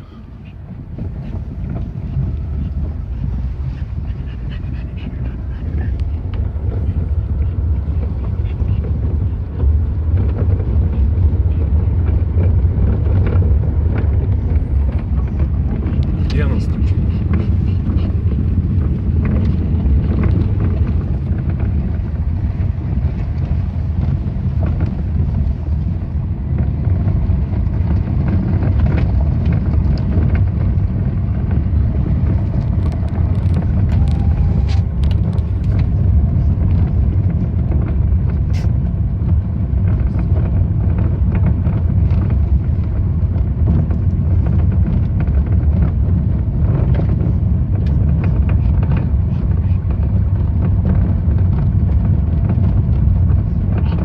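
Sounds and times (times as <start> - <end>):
road and tyre rumble: 0.0 - 54.0.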